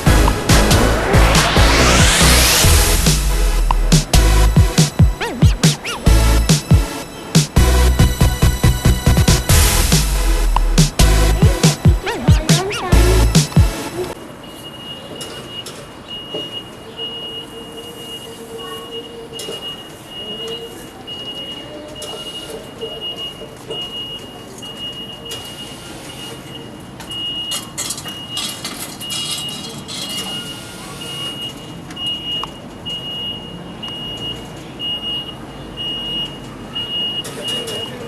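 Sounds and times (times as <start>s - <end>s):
engine noise: 0.0s - 14.2s
street noise: 0.0s - 38.0s
vehicle warning beeper: 3.5s - 38.0s.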